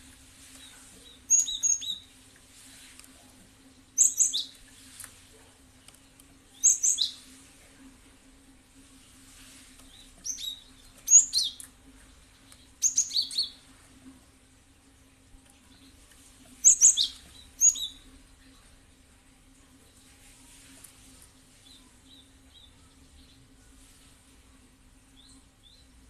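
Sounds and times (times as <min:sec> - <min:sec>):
bird chirping: 0:00.6 - 0:02.1, 0:04.0 - 0:04.6, 0:06.5 - 0:07.2, 0:09.9 - 0:11.6, 0:12.5 - 0:13.6, 0:16.6 - 0:18.0.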